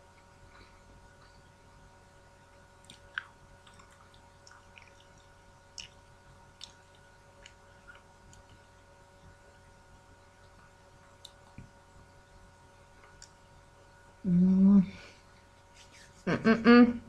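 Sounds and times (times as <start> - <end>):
close-up chewing: 2.6 - 9.8.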